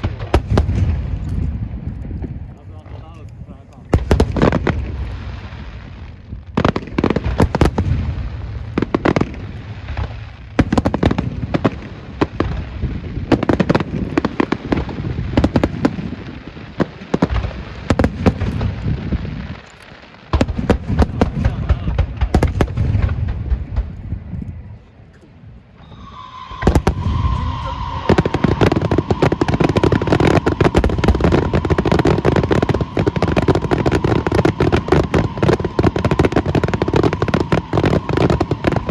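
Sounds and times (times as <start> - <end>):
fireworks booms and bangs: 0.0 - 25.0, 25.6 - 38.9
rapid crackling fireworks barrage: 0.0 - 38.9
high whistle: 25.8 - 38.8.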